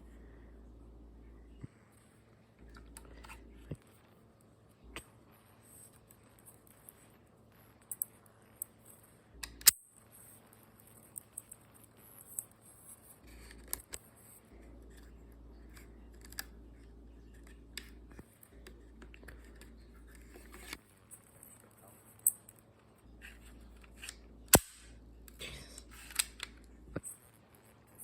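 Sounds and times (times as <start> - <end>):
faint low hum: 0.0 - 28.0
small sharp clicks and snaps: 7.7 - 14.1.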